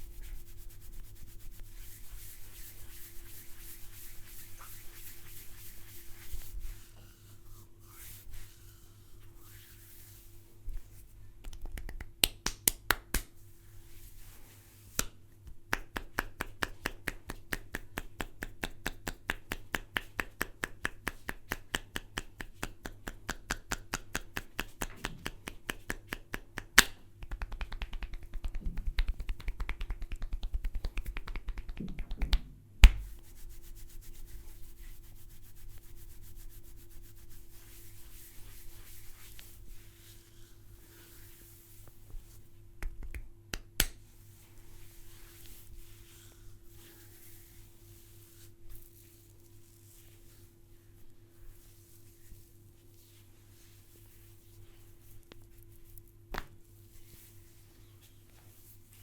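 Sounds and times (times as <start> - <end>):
rubbing and handling noise: 0.0 - 11.2, 32.9 - 59.0
hands snapping: 11.4 - 13.3, 15.0 - 33.1, 42.8 - 44.0.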